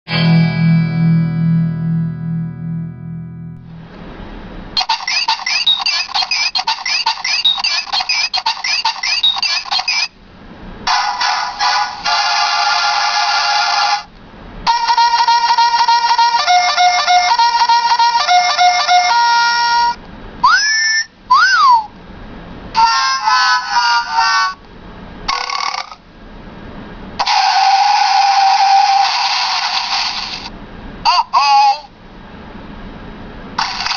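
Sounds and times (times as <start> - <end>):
toy chirping electronic effect: 4.8 - 10.1, 20.4 - 21.9, 25.3 - 26.0
short pitch-bending calls: 20.4 - 21.9.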